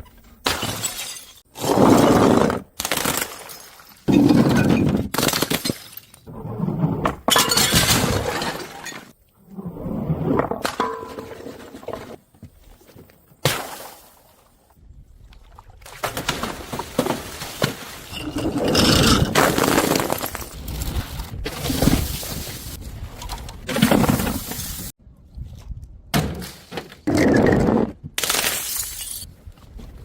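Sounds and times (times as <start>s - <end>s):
glass bottles shattering: 0.5s - 1.5s, 7.3s - 9.1s, 18.1s - 20.5s, 28.3s - 29.3s.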